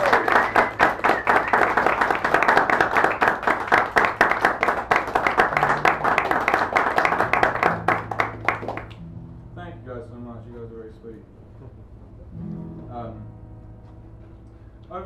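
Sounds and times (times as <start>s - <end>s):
audience applauding: 0.0s - 9.0s.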